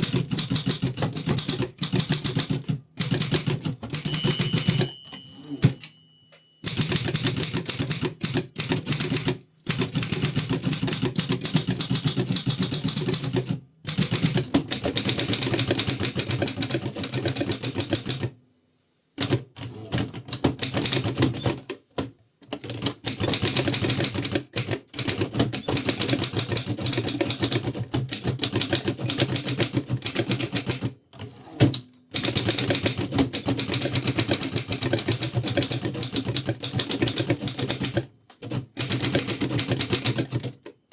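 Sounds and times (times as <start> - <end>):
typewriter keys striking: 31.6 - 40.8.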